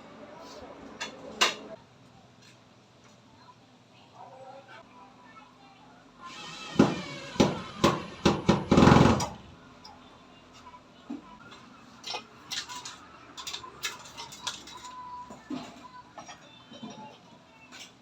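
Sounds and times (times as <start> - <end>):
tools clicking and tapping: 12.0 - 17.1.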